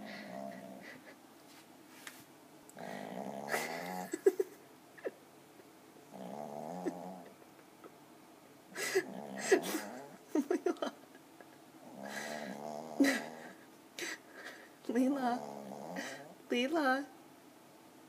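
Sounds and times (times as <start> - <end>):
dog snoring: 2.8 - 4.2, 6.1 - 7.3, 11.8 - 13.6, 15.2 - 16.4
dog snorting: 2.8 - 4.2.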